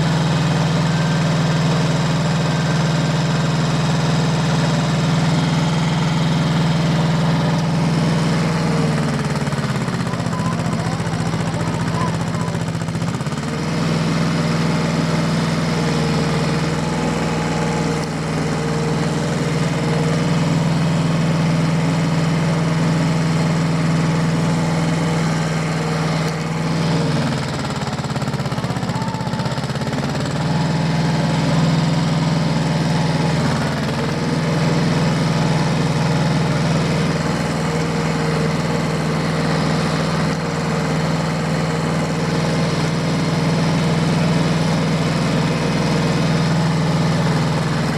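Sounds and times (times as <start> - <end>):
diesel tractor engine running: 0.0 - 47.9.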